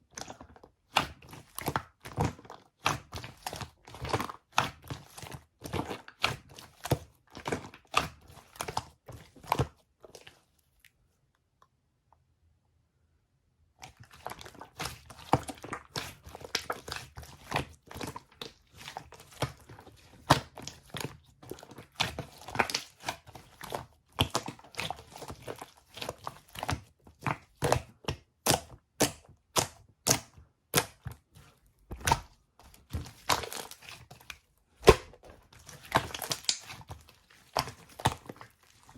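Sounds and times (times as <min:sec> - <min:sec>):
slime squished by hand: 0:00.0 - 0:10.5, 0:13.8 - 0:38.9
wet clicks and bubble pops: 0:31.9 - 0:33.8, 0:34.8 - 0:36.9.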